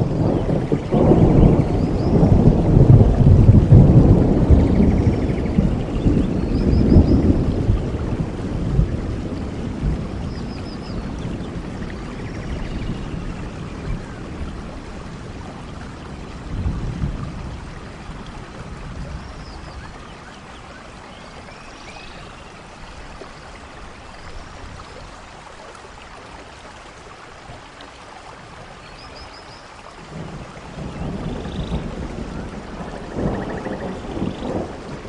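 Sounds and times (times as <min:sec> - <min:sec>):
low rumble of thunder: 0:00.0 - 0:25.2, 0:30.0 - 0:35.0
rain falling on foliage: 0:00.0 - 0:35.0.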